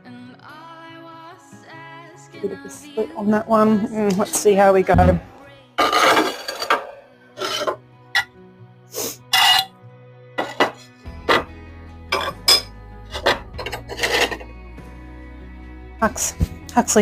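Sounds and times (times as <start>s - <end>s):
soft background music: 0.0s - 17.0s
ceramic ware clinking: 5.8s - 8.3s, 9.3s - 9.7s, 10.4s - 11.5s, 12.1s - 14.5s.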